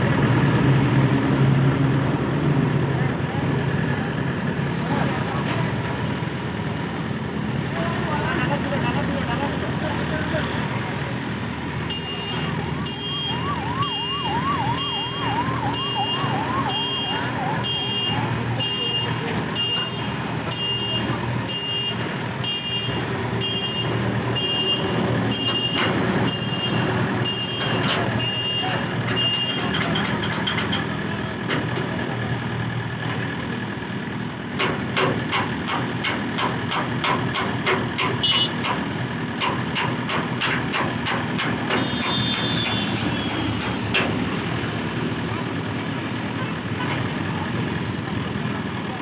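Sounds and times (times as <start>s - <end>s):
heavy engine running: 0.0s - 49.0s
warning beeper beeps: 11.9s - 19.2s.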